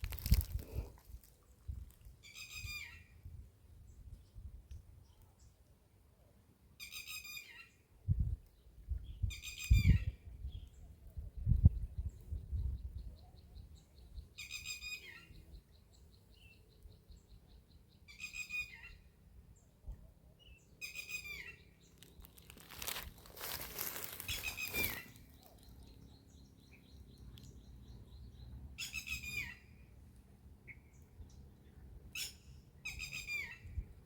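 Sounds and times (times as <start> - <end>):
bird calling: 20.8 - 29.8.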